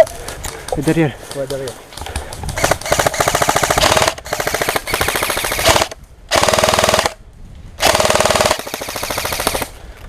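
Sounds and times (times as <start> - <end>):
airsoft gun firing full auto: 2.6 - 7.2, 7.8 - 9.7.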